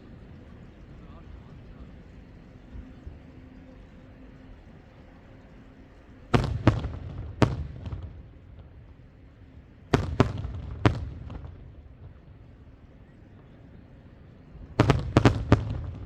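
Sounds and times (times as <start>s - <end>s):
rumble and echo: 0.0s - 16.0s
firework bangs: 6.4s - 8.7s, 9.9s - 12.2s, 14.8s - 16.0s.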